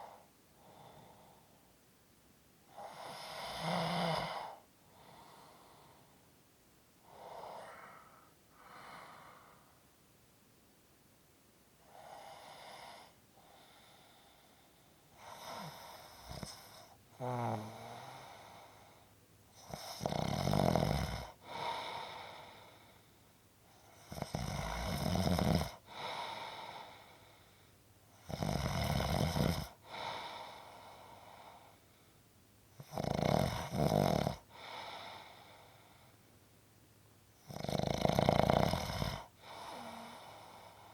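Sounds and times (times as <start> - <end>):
person snoring: 2.7 - 6.1, 7.0 - 9.8, 15.2 - 18.8, 19.6 - 22.7, 24.0 - 27.0, 28.2 - 31.6, 32.8 - 35.6, 37.4 - 40.9.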